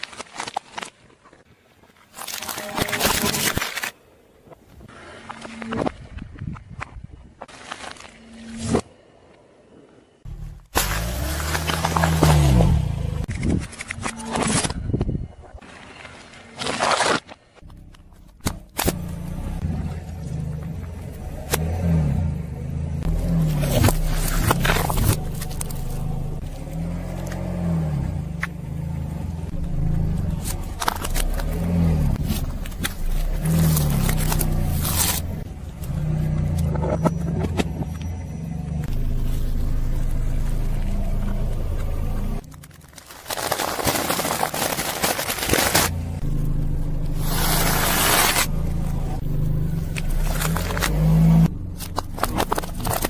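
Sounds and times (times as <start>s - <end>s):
car engine running at low revs: 10.3s - 13.3s, 17.6s - 42.8s, 45.3s - 53.0s
objects crushing under tyres: 10.3s - 15.2s, 23.0s - 38.1s, 39.2s - 53.0s.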